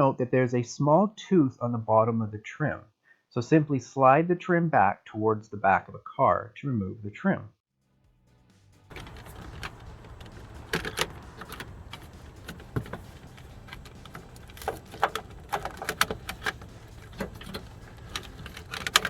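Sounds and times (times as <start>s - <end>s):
low steady hum: 8.9s - 19.0s
plastic trim clicks and rattles: 8.9s - 19.0s.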